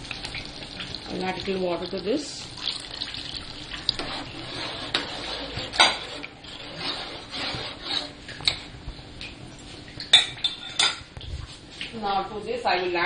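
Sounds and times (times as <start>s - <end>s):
spoon stirring in a pot: 2.7s - 11.1s.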